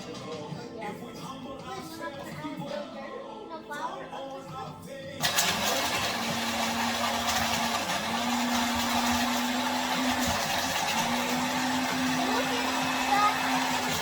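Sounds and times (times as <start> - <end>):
kitchen grinder motor humming: 5.2 - 14.0.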